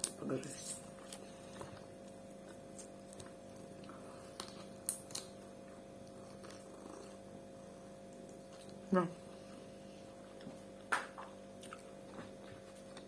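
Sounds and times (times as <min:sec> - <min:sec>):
quiet eating sounds: 0:00.0 - 0:13.0
steady electrical hum: 0:00.0 - 0:13.0.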